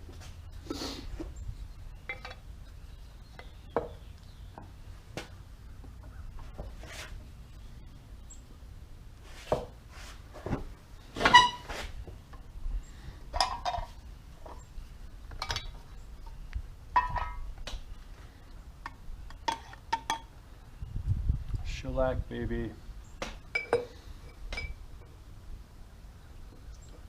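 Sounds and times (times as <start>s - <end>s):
bottles and cans clinking: 13.4s - 14.0s, 17.0s - 17.4s, 23.5s - 24.8s.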